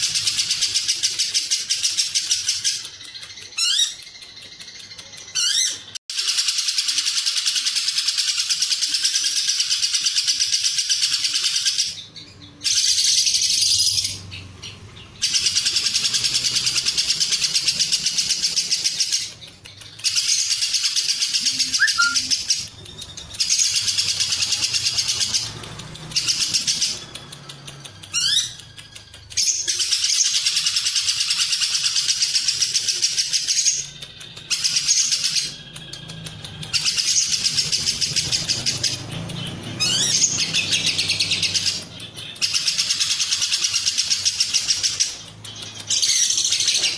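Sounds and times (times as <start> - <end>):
lovebird chattering trill: 0.0 - 46.9.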